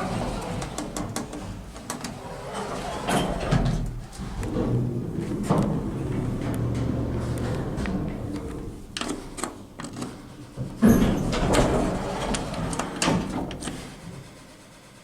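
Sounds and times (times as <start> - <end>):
lift relays and doors clunking: 0.0 - 14.3
lift drive motor humming: 3.4 - 14.1.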